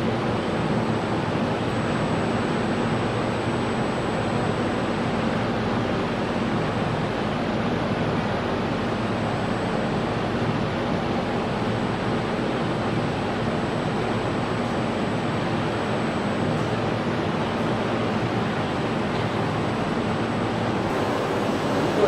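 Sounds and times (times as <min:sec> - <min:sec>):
thin high whine: 0:20.6 - 0:22.0
welding machine running: 0:20.8 - 0:22.0.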